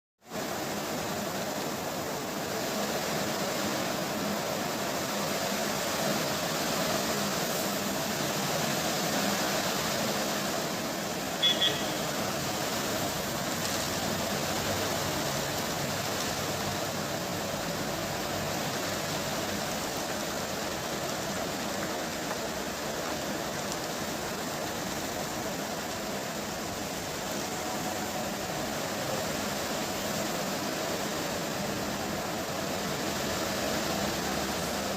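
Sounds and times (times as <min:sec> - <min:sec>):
steady rain falling: 0:00.2 - 0:34.9
short high-pitched tones: 0:11.4 - 0:12.1.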